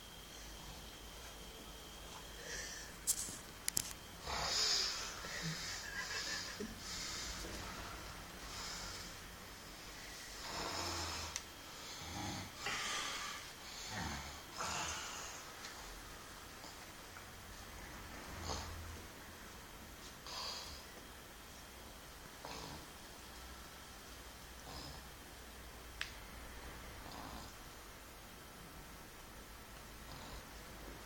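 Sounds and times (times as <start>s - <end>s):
heavy snoring: 4.2s - 9.2s, 9.8s - 15.5s, 18.3s - 18.9s, 22.4s - 23.0s, 24.6s - 25.2s, 27.0s - 27.6s, 30.0s - 30.8s.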